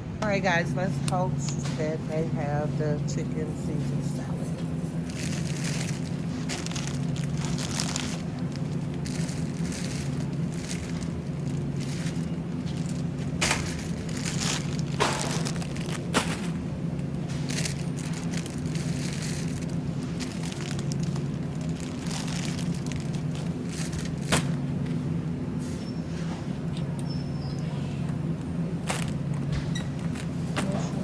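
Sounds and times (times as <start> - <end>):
steady low hum: 0.0 - 31.0
packaging crinkling and clicking: 3.2 - 25.0, 28.4 - 30.9.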